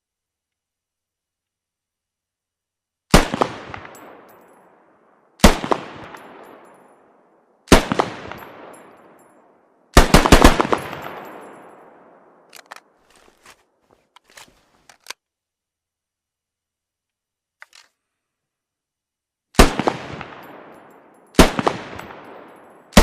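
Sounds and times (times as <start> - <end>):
rifle shots echoing: 3.1 - 13.0, 19.6 - 23.0.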